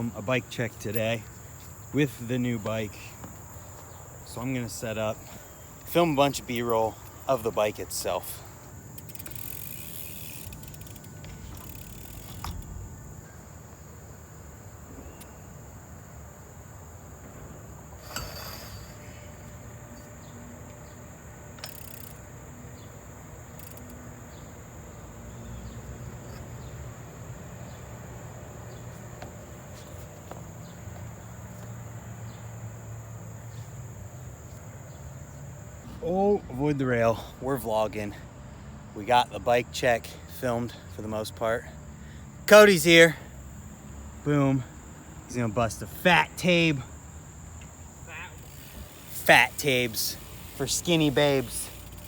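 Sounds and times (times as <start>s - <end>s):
insects droning: 0.0s - 52.0s.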